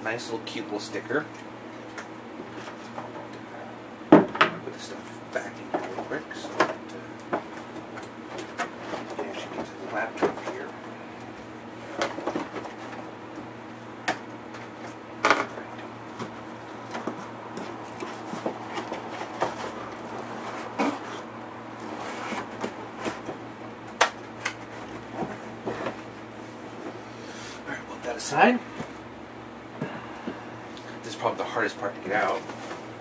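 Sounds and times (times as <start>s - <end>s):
faint steady hum: 0.0s - 33.0s
cardboard boxes being handled: 16.0s - 23.5s, 24.3s - 27.0s.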